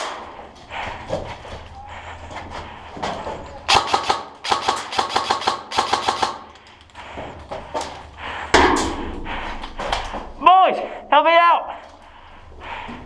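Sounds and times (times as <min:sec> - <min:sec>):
airsoft rifle firing bursts: 0:03.7 - 0:06.6.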